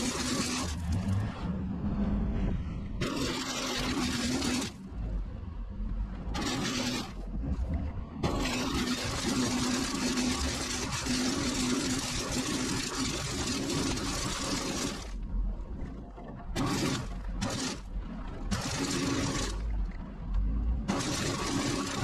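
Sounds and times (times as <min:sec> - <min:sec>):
truck rumble: 0:00.0 - 0:03.5.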